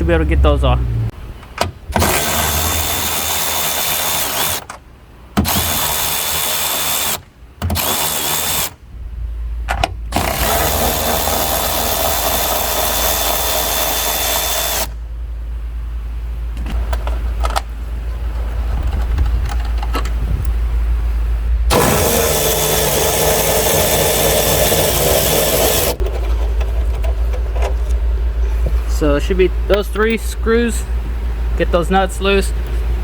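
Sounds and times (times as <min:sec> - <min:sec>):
cordless drill whine: 0:02.0 - 0:04.7, 0:05.5 - 0:07.2, 0:07.8 - 0:08.8, 0:10.2 - 0:15.0, 0:21.7 - 0:26.0.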